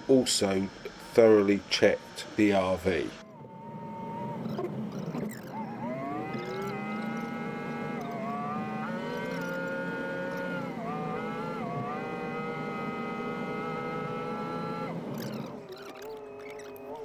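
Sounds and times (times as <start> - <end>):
motorhome engine droning: 0.0 - 17.0.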